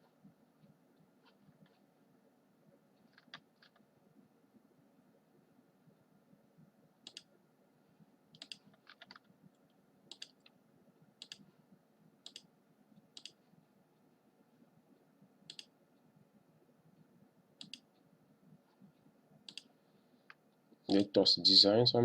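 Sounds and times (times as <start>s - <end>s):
computer mouse or keyboard clicks: 3.1s - 3.8s, 7.0s - 7.3s, 8.3s - 9.3s, 10.1s - 10.6s, 11.2s - 11.4s, 12.2s - 12.5s, 17.6s - 17.9s, 19.5s - 19.7s.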